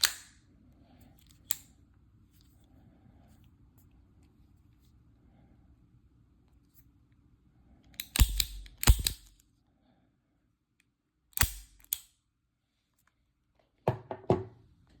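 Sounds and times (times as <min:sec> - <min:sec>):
handgun mechanical clicks: 0:00.0 - 0:00.4, 0:01.2 - 0:01.7, 0:07.9 - 0:09.4, 0:11.3 - 0:12.2.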